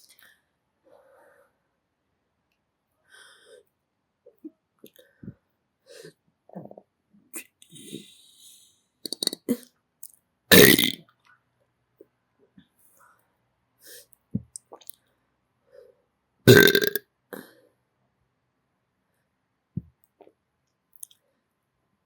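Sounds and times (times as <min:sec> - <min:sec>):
person burping: 0:09.1 - 0:09.6, 0:10.5 - 0:11.0, 0:16.5 - 0:17.0.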